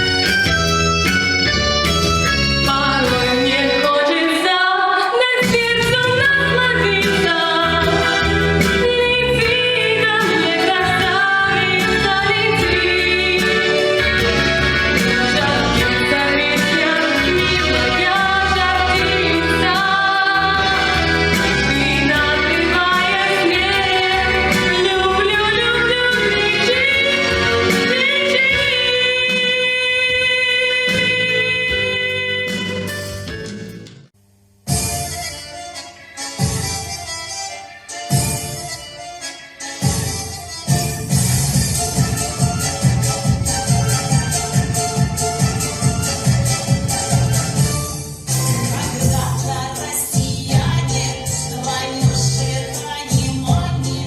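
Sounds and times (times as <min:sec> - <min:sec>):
instrumental accompaniment: 0:00.0 - 0:54.0
woman singing: 0:02.6 - 0:32.9, 0:48.6 - 0:54.0.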